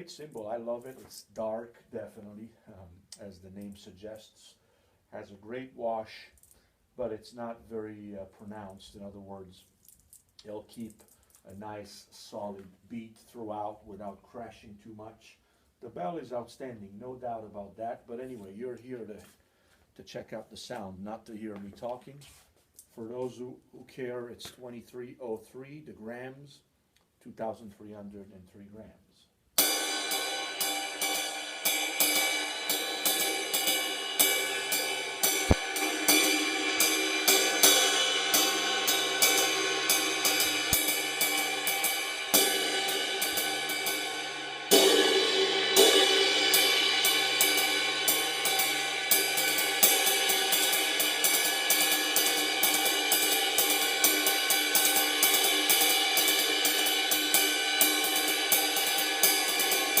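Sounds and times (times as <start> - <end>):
ride cymbal strokes: 29.6 - 60.0.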